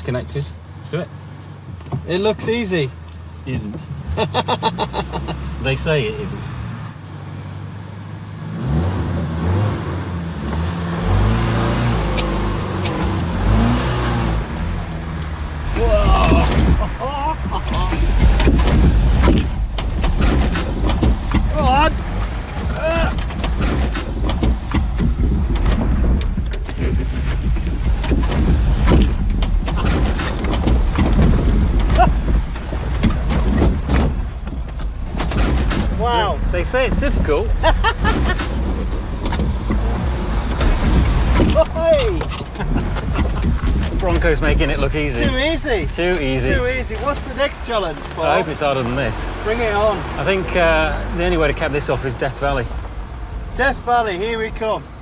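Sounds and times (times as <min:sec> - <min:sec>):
engine revving: 0:08.3 - 0:54.4
short creak: 0:15.7 - 0:35.9
tyres knocking on wood: 0:15.7 - 0:36.2, 0:36.8 - 0:45.4.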